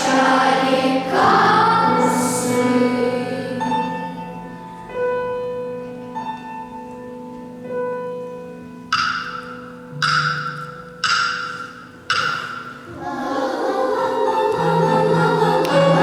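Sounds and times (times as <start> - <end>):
choir singing: 0.0 - 4.7, 12.8 - 16.0
keyboard chords: 0.0 - 16.0
sharp bright percussive hit: 8.9 - 13.0.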